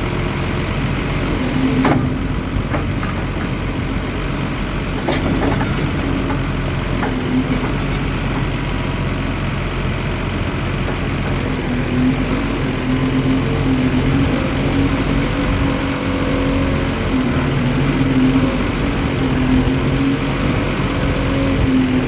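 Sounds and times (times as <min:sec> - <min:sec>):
diesel engine idling: 0:00.0 - 0:22.0
machine clanks: 0:01.7 - 0:12.7.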